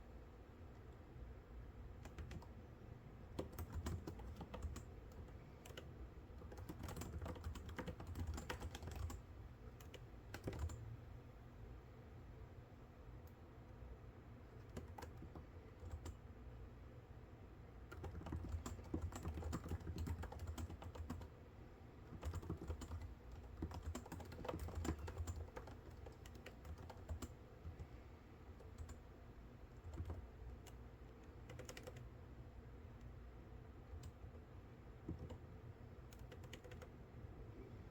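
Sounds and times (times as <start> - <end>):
low steady hum: 0.0 - 37.9
typing on computer keyboard: 2.0 - 2.6, 3.3 - 10.9, 14.6 - 16.2, 17.9 - 21.4, 22.0 - 28.0, 28.6 - 29.0, 29.7 - 32.2, 35.0 - 37.0.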